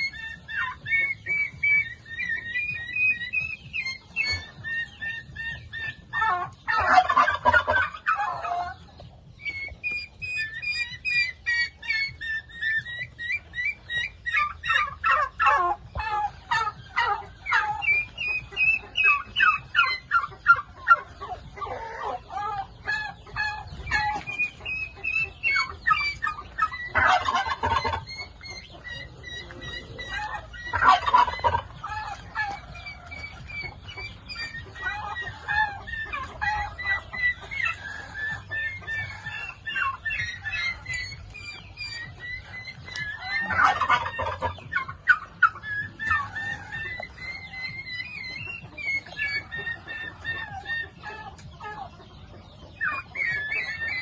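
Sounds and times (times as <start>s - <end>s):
high quick chirping calls: 0.0s - 54.0s
turkeys gobbling: 0.0s - 54.0s.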